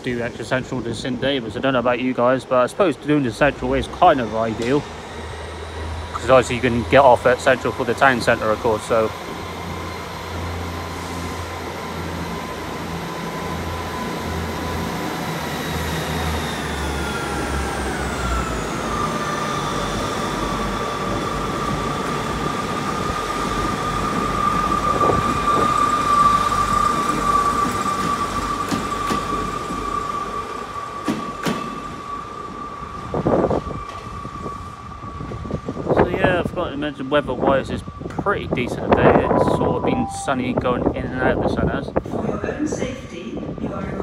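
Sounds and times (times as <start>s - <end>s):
diesel train engine throb: 0.0s - 42.2s
transmission whine: 38.8s - 41.6s.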